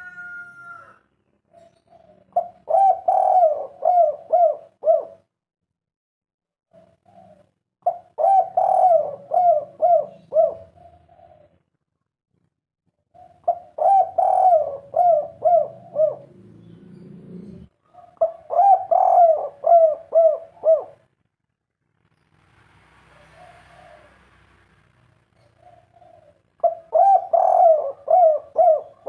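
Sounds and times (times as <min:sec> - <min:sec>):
dove cooing: 0:00.0 - 0:05.3, 0:06.7 - 0:11.6, 0:13.1 - 0:21.1, 0:23.2 - 0:24.3, 0:25.4 - 0:29.0.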